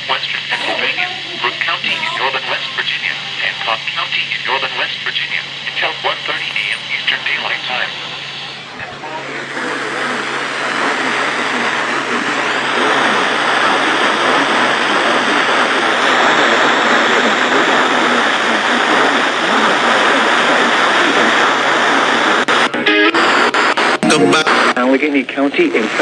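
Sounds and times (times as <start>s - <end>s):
broadcast voice: 0.0s - 10.1s, 15.9s - 26.0s
radio static hiss: 0.0s - 26.0s
radio crackles: 1.4s - 25.2s.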